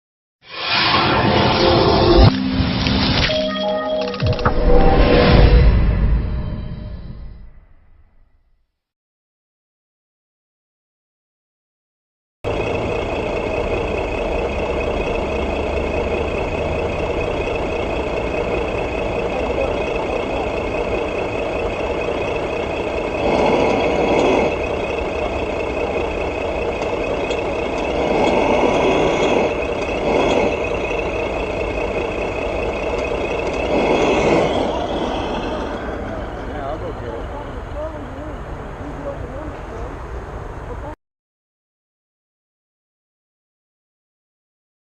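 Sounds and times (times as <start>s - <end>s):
engine revving: 12.5s - 40.6s
simulated truck engine idling: 12.5s - 41.0s.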